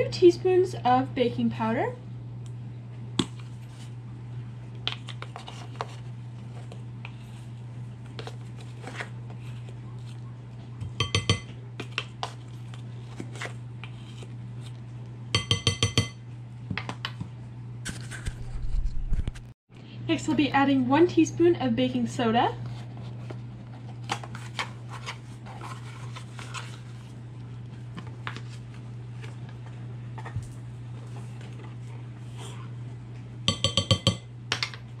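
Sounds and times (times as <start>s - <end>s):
steady low hum: 0.0s - 35.0s
metal spoon clinking on bowl: 10.9s - 11.5s, 15.4s - 16.2s, 33.5s - 34.3s
spoon ringing taps: 10.9s - 11.5s, 15.4s - 16.2s, 33.5s - 34.3s.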